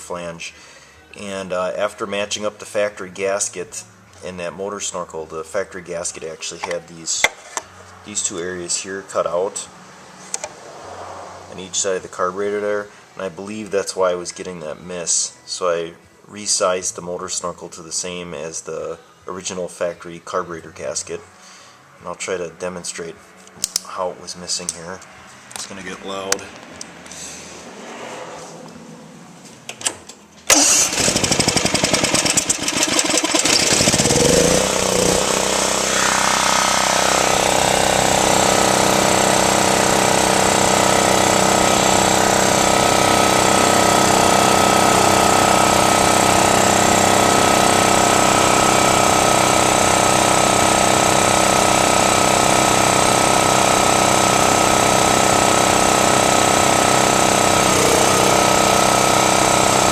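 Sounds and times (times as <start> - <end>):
generator engine cranking and running: 29.7 - 59.9.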